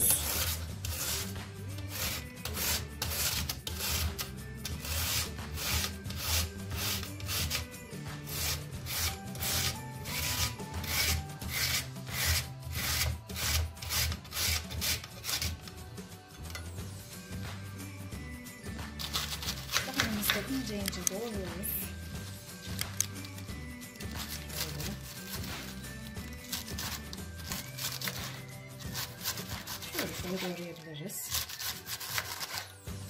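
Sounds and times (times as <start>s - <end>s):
carrots rasping on a grater: 0.0s - 15.7s, 19.0s - 20.4s, 23.9s - 32.8s
soft background music: 0.0s - 33.0s.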